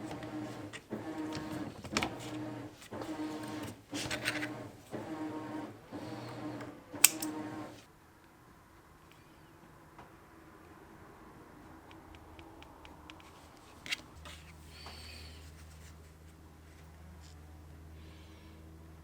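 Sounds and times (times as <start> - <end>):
small motorized machine running: 0.0 - 7.8.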